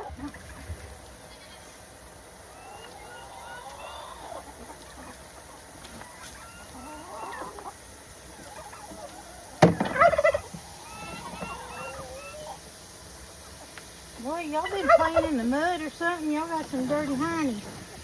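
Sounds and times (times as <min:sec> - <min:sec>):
hens clucking: 0:00.0 - 0:18.0
loud close squawk: 0:08.4 - 0:12.6.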